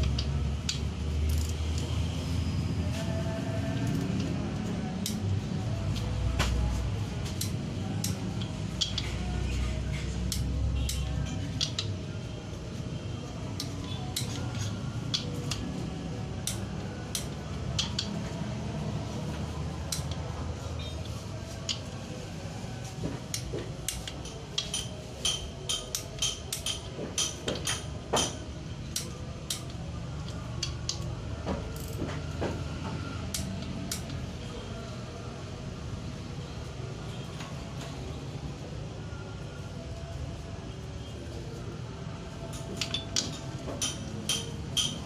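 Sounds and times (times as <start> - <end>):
metal tools clicking and clinking: 7.2 - 12.0, 23.3 - 31.1, 42.4 - 45.0.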